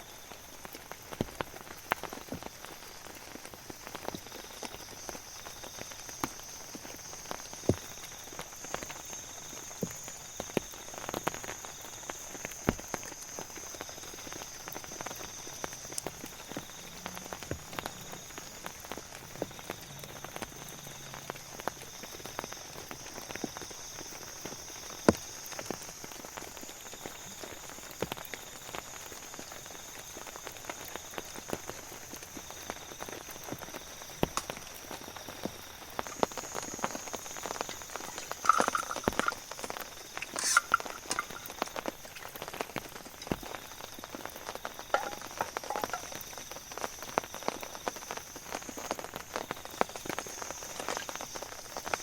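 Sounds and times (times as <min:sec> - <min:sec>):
steady rain: 0:00.0 - 0:52.0
drops ticking on a surface: 0:32.9 - 0:47.9.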